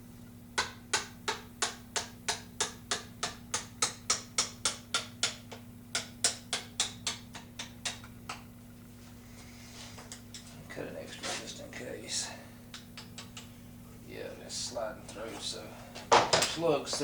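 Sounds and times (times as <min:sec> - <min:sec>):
hammer tapping wooden dowel: 0:00.6 - 0:08.5.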